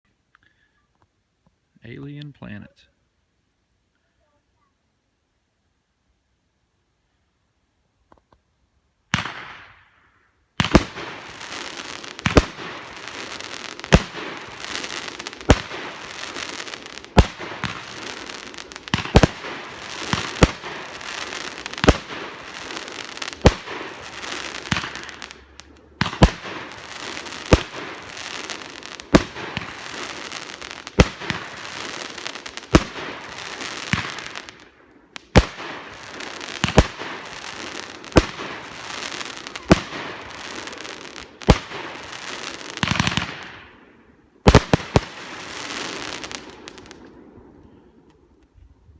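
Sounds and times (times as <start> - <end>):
firework bangs: 9.1 - 47.6
firework crackling: 9.1 - 48.5.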